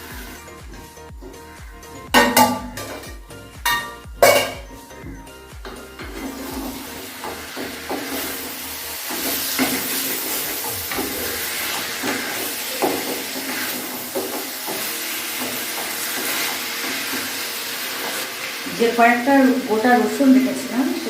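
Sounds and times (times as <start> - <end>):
chicken sizzling in oil: 0.0 - 0.8, 5.6 - 21.0.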